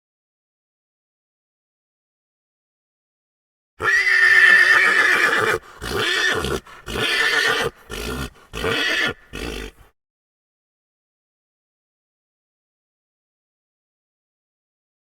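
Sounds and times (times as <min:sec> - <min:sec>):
horse neighing: 0:03.8 - 0:09.9.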